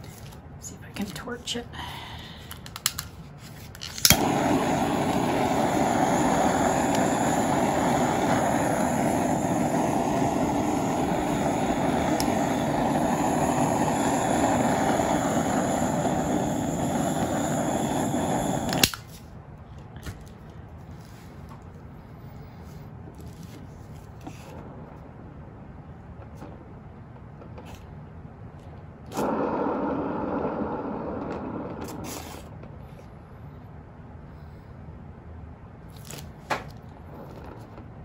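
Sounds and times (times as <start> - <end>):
torch igniter clicking: 2.6 - 3.1, 3.8 - 19.2, 29.1 - 32.5
torch flame hissing: 3.8 - 19.2, 29.1 - 32.6.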